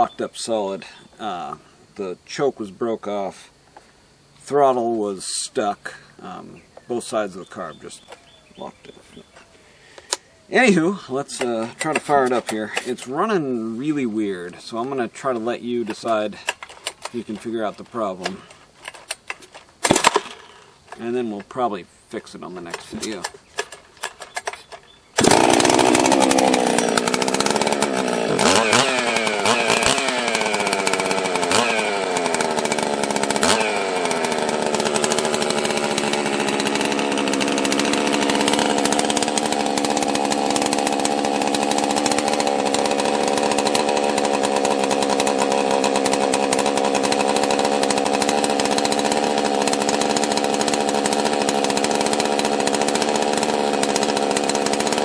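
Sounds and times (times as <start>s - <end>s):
chainsaw engine running unevenly: 11.3s - 13.2s, 22.5s - 55.0s.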